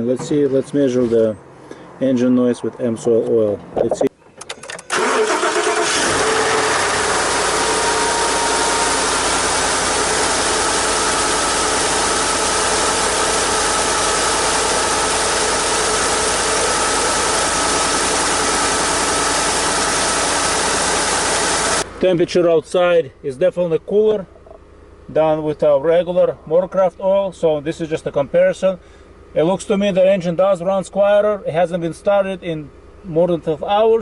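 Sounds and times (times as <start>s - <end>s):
truck engine idling: 5.0s - 22.8s.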